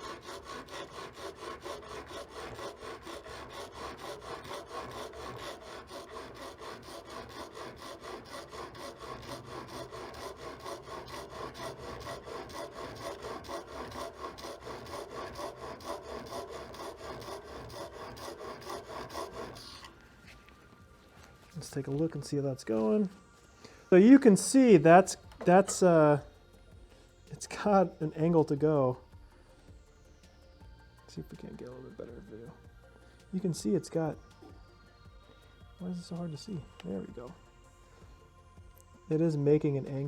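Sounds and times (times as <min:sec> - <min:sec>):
chisel scraping on sharpening stone: 0:00.0 - 0:19.9, 0:25.4 - 0:26.0.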